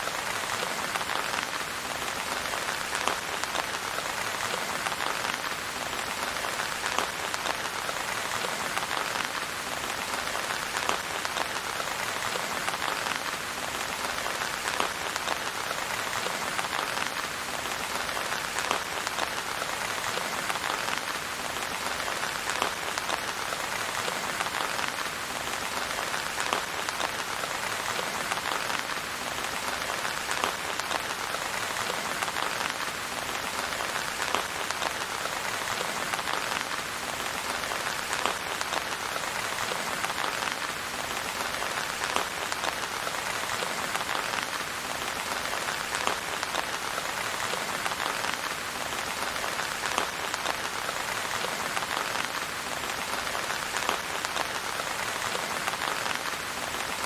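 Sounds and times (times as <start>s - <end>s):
rain pattering on a surface: 0.0s - 57.0s.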